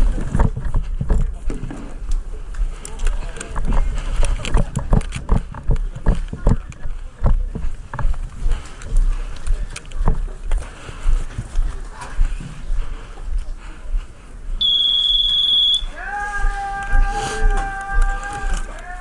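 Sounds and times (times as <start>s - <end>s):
thumping footsteps: 0.0s - 14.6s.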